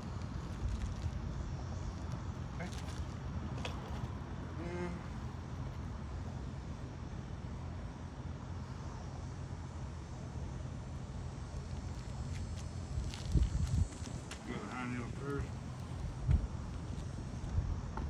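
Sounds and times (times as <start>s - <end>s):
low background rumble: 10.0s - 18.0s.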